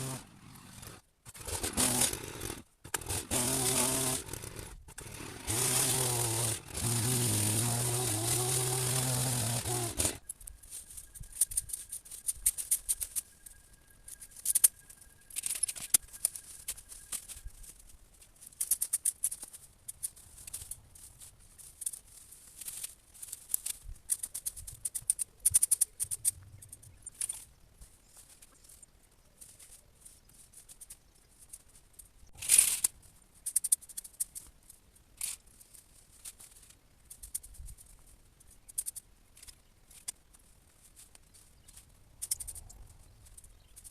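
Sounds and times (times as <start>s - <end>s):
power tool motor: 0.0s - 10.3s
dry twigs crackling and rustling: 0.5s - 43.9s.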